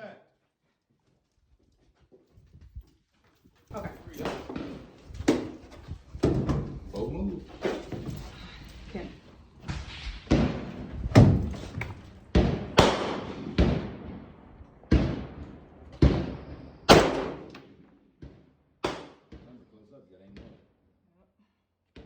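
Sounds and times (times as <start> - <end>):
rifle shots echoing: 4.1 - 5.6, 9.6 - 17.9, 18.8 - 19.4
faint gunshot reports: 12.3 - 14.1, 16.0 - 17.5.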